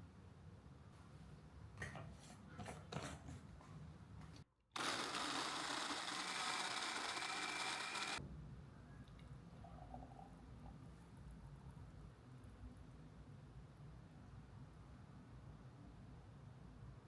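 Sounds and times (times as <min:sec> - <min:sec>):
electric blender whining: 0:04.8 - 0:08.2.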